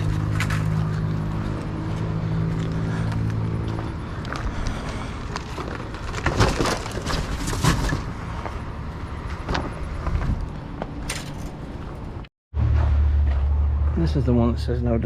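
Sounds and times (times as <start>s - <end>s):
scrap rustling and clattering: 5.3s - 8.1s.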